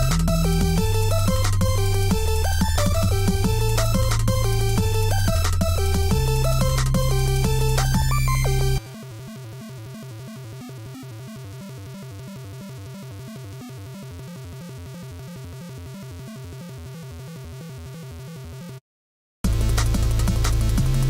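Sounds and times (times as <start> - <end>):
background music with steady beat: 0.0 - 9.0, 19.5 - 21.0.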